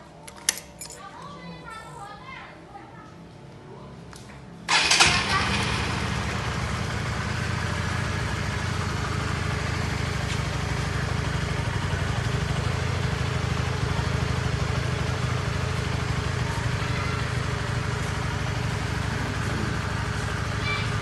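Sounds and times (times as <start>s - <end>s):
motorcycle engine idling: 4.7s - 21.0s.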